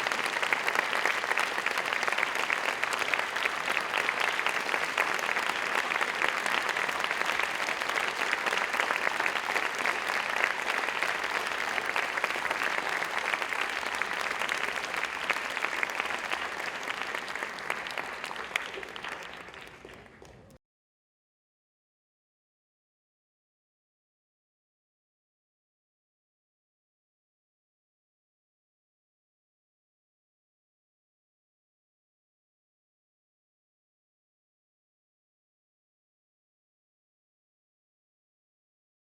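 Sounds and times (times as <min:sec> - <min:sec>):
audience applauding: 0:00.0 - 0:20.6.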